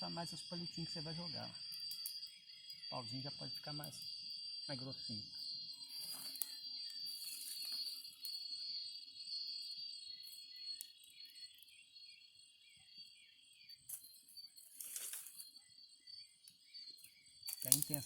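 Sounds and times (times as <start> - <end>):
insects chirring: 0.0 - 18.0
rustle: 14.6 - 15.4
sharp clicks: 17.5 - 18.0.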